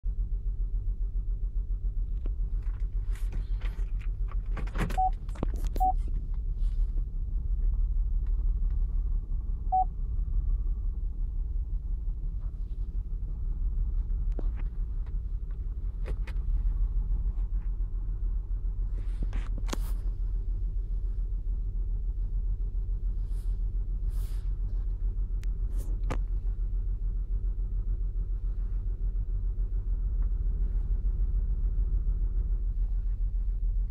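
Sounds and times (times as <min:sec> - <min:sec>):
car engine idling roughly: 0:00.1 - 0:33.9
short beeps: 0:04.9 - 0:05.2, 0:05.8 - 0:06.0.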